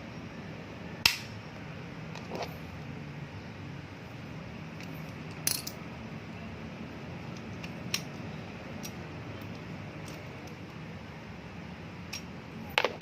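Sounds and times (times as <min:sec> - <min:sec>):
steady low hum: 0:00.0 - 0:13.0
metal tools clinking: 0:04.8 - 0:05.8.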